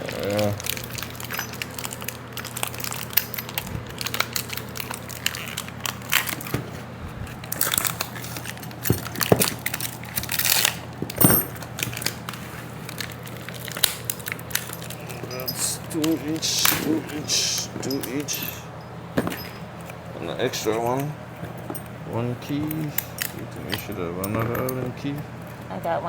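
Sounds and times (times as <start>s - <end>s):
plastic packaging crinkling: 0.0s - 17.3s.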